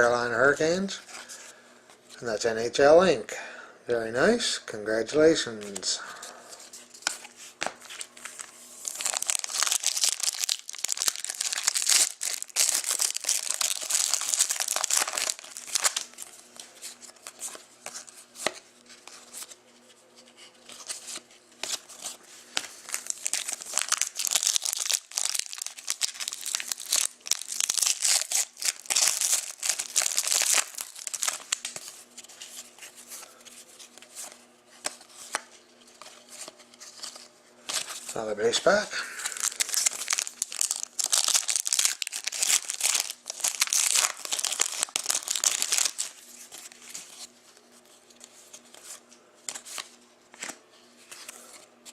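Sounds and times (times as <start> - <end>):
wrappers being torn and crinkled: 8.2 - 16.3, 22.6 - 31.9, 39.2 - 47.0.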